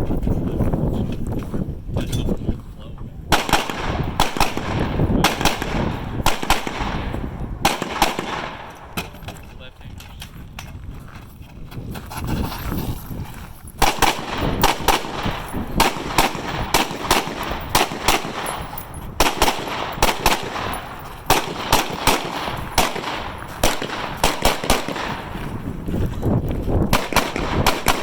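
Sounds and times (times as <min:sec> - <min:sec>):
rifle shots: 0:03.3 - 0:09.2, 0:13.8 - 0:25.7, 0:26.9 - 0:28.0.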